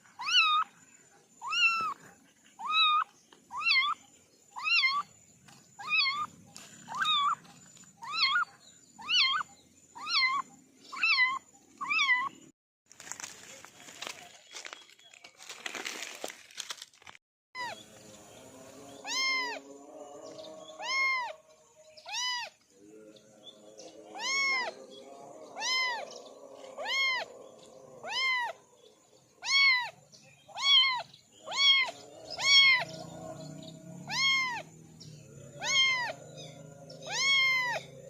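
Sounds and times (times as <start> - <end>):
kitten meowing: 0.2 - 0.6, 1.4 - 2.0, 2.6 - 4.0, 4.6 - 5.0, 5.8 - 6.3, 6.9 - 7.4, 8.0 - 8.4, 9.0 - 9.4, 10.0 - 12.3, 19.1 - 19.6, 20.8 - 21.3, 22.1 - 22.5, 24.2 - 24.7, 25.6 - 26.0, 26.8 - 27.3, 28.0 - 28.6, 29.4 - 32.9, 34.1 - 34.6, 35.6 - 36.2, 37.0 - 37.8.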